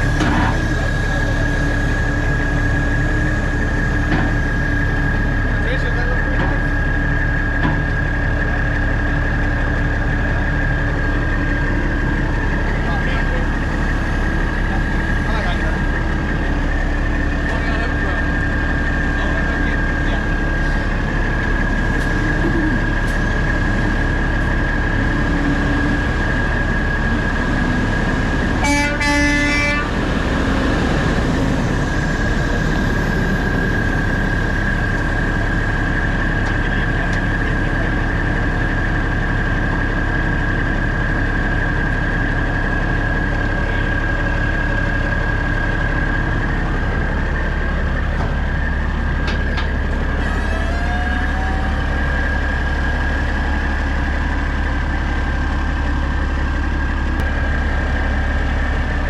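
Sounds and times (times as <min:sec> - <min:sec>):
heavy diesel engine running: 0:00.0 - 0:59.0
horn: 0:28.6 - 0:29.9.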